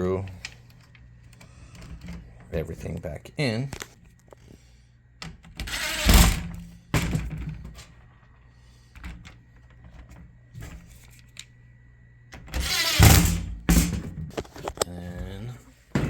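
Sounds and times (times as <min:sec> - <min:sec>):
screws being driven: 0:05.6 - 0:06.4, 0:12.6 - 0:13.4.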